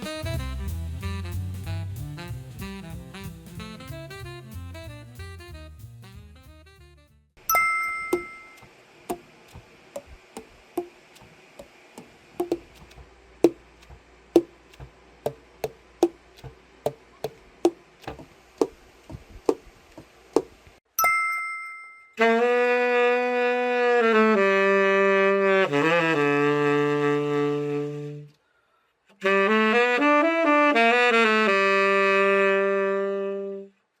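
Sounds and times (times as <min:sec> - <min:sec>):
tenor saxophone low notes: 0:00.0 - 0:06.8, 0:22.2 - 0:28.4, 0:29.2 - 0:33.8
brief chime: 0:07.5 - 0:08.7, 0:21.0 - 0:22.2.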